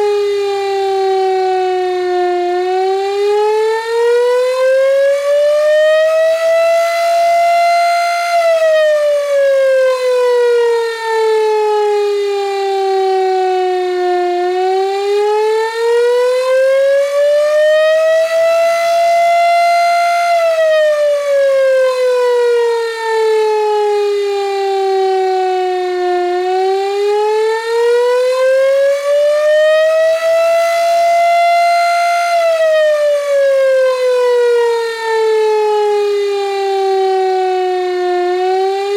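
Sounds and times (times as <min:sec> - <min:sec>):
electric motor siren winding up and down: 0:00.0 - 0:38.9.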